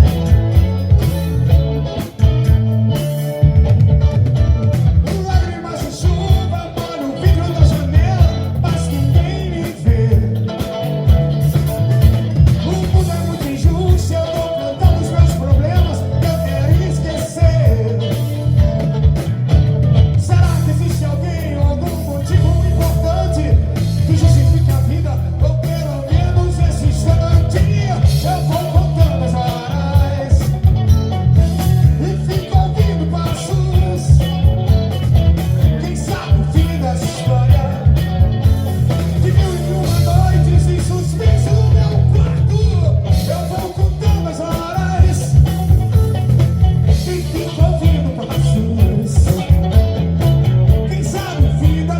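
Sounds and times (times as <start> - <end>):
heavy pulsing bass beat: 0.0 - 51.9
person singing: 5.1 - 10.7, 12.5 - 18.6, 20.2 - 30.8, 31.5 - 34.6, 35.6 - 45.9, 46.8 - 50.1, 50.7 - 51.9.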